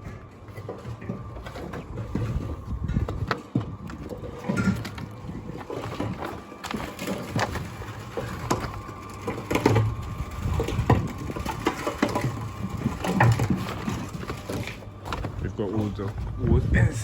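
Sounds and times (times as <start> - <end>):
knocking and clattering of materials: 0.0 - 16.7.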